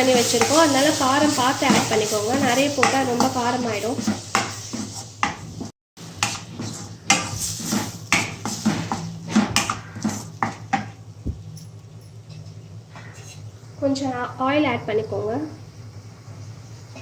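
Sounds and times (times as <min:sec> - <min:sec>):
spoon scraping a cooking pan: 0:06.2 - 0:10.6.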